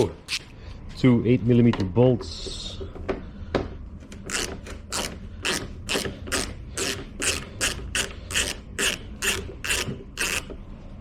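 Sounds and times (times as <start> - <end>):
ratchet wrench ratcheting: 4.3 - 10.5.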